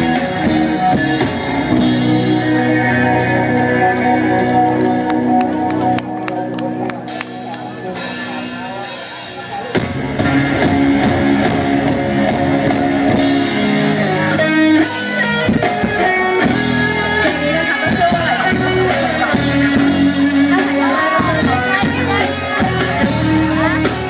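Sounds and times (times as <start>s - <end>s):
live rock band instrumental: 0.0s - 24.0s.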